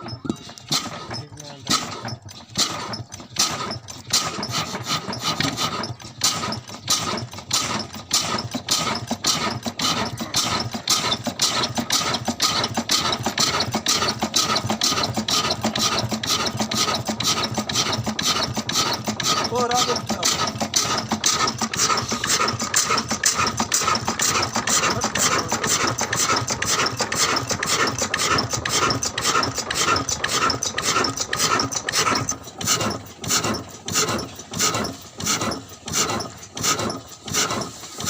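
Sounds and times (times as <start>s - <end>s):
old engine chugging: 0.0s - 38.0s.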